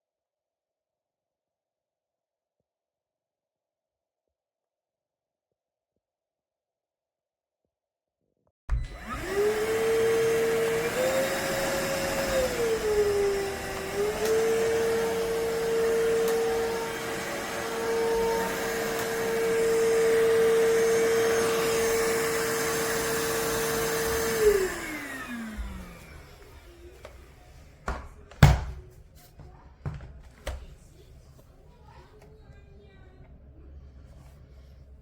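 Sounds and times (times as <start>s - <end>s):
vacuum motor whine: 8.7s - 27.4s.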